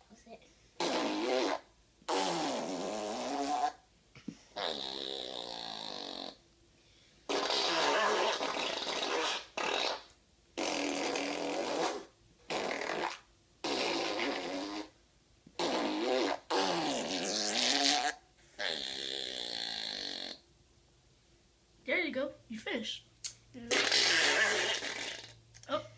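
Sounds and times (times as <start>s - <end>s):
farting noises: 0.8s - 3.8s, 4.5s - 6.4s, 7.3s - 20.4s, 23.7s - 25.4s.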